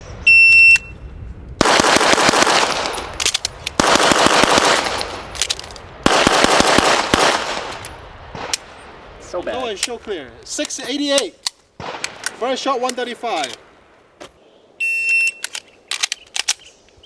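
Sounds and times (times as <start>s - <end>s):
rapid handgun shots: 1.6s - 5.2s, 6.0s - 7.8s.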